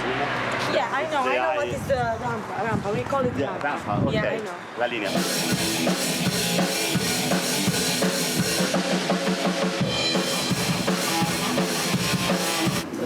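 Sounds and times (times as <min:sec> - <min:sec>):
drum kit beat: 0:05.1 - 0:12.8
sustained pitched instruments: 0:05.1 - 0:12.8.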